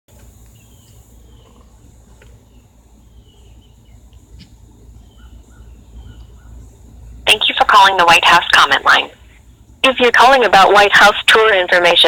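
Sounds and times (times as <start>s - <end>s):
high insect drone: 0.1s - 11.8s
bird chirps: 0.5s - 1.7s, 2.4s - 7.2s.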